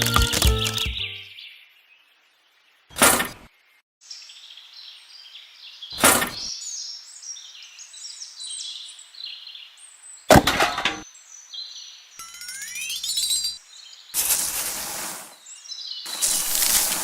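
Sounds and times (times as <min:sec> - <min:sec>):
birds chirping: 0:00.0 - 0:01.5.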